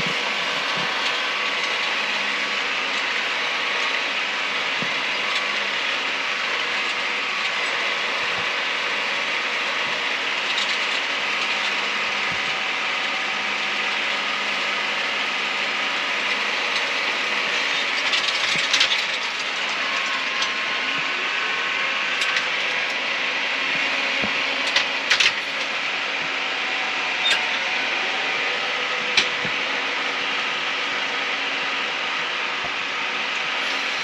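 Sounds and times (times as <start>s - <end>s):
tractor engine running: 0.0s - 34.0s
loud clatter: 16.0s - 26.4s
mechanical rattle and knocks: 16.6s - 21.1s, 23.6s - 26.4s, 29.1s - 29.6s.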